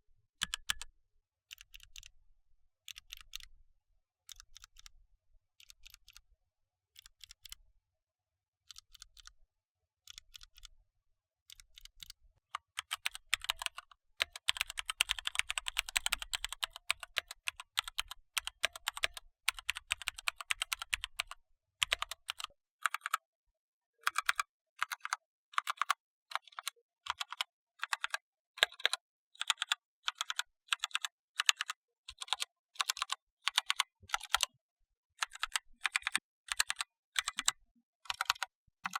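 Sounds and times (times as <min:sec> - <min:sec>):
mechanical keyboard keystrokes: 0:12.0 - 0:23.1.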